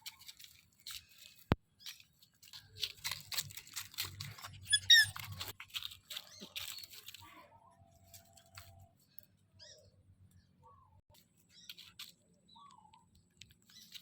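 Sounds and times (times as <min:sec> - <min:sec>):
rustling of handling: 0:00.0 - 0:09.4, 0:11.1 - 0:14.0
puppy squeaking: 0:04.2 - 0:05.6.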